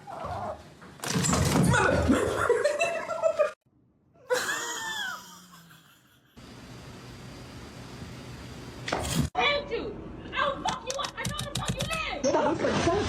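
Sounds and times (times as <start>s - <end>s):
person laughing loudly: 4.2s - 6.4s.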